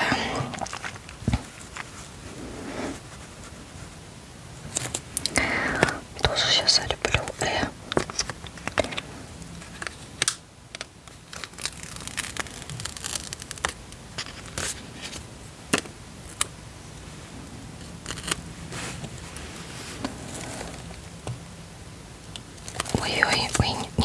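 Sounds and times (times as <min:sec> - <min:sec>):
paper stickers peeling: 0:11.3 - 0:15.2.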